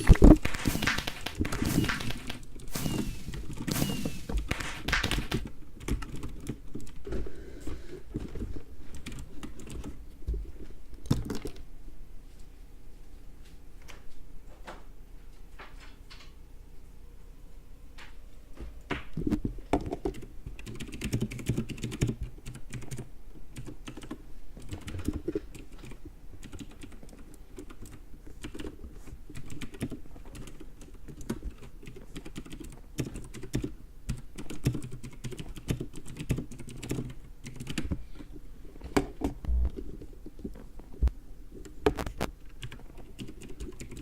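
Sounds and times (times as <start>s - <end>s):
computer keyboard typing: 0.0s - 7.0s, 8.9s - 10.0s, 19.8s - 37.9s, 42.4s - 44.0s.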